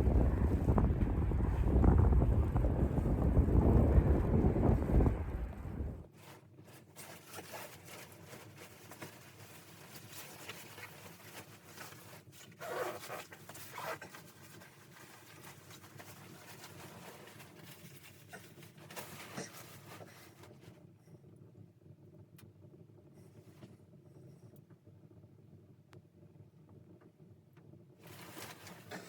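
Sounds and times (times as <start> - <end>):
rustling and handling noises: 6.0 - 20.9, 28.0 - 29.0.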